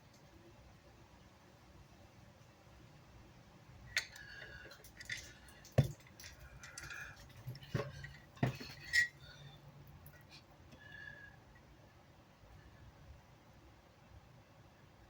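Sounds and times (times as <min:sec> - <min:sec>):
tools clinking on workbench: 0:04.0 - 0:09.2.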